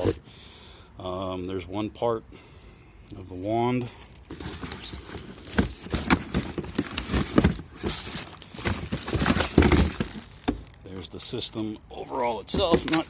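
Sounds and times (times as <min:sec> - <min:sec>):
packaging crinkling and rustling: 0:04.0 - 0:10.8, 0:12.2 - 0:13.0
plastic parts knocking and clicking: 0:04.4 - 0:10.7, 0:12.4 - 0:13.0.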